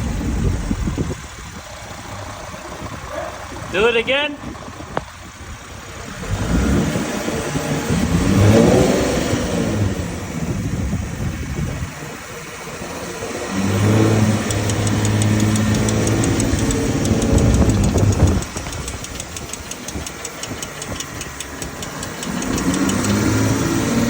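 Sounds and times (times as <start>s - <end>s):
car engine: 0.0s - 24.0s
rapid brake clicking: 14.2s - 24.0s.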